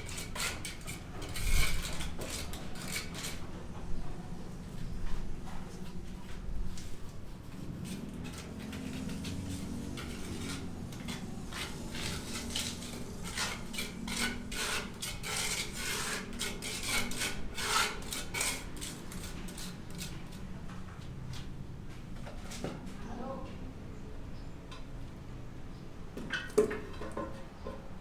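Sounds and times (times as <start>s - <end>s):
tool scraping a hard surface: 0.0s - 3.7s, 6.8s - 20.5s.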